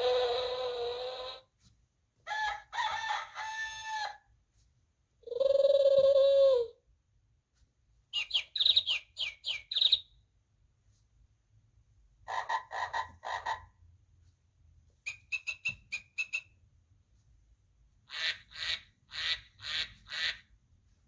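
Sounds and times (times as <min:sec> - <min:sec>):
recorded animal calls: 0:00.0 - 0:01.5, 0:12.2 - 0:13.8
recorded bird chirping: 0:00.0 - 0:01.5, 0:05.2 - 0:06.8, 0:08.0 - 0:10.4, 0:12.2 - 0:13.9, 0:14.9 - 0:16.9, 0:18.0 - 0:20.6.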